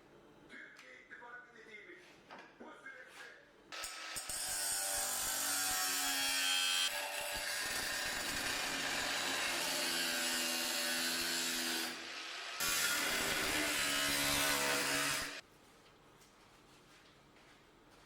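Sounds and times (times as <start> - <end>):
power tool rasping on sheet metal: 3.8 - 15.4.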